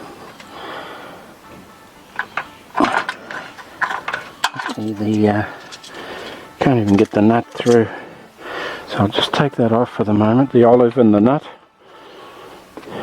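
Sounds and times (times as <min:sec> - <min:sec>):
metal tube scraping and clinking: 0:02.2 - 0:08.0.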